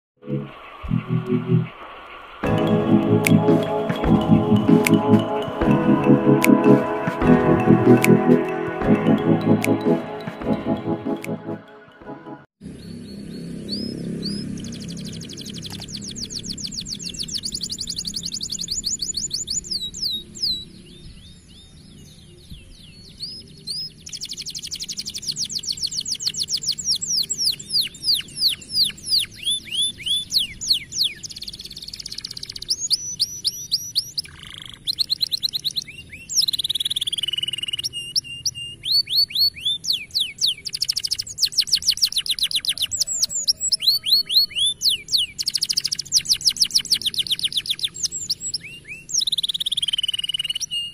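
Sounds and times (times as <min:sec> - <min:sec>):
canary singing trills: 0:12.6 - 0:50.9.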